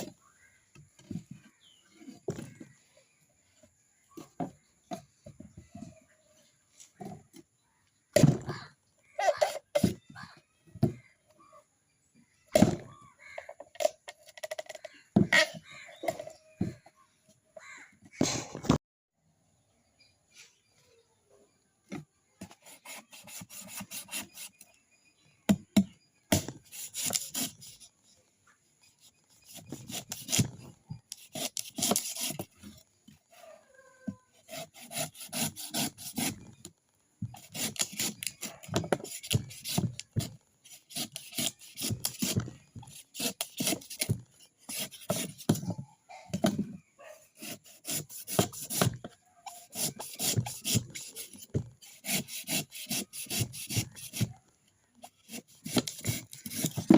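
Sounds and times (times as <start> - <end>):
coconut being scraped: 22.4 - 24.8, 26.3 - 28.0, 29.0 - 32.8, 34.3 - 36.6, 37.2 - 45.8, 47.3 - 54.4, 55.0 - 56.9.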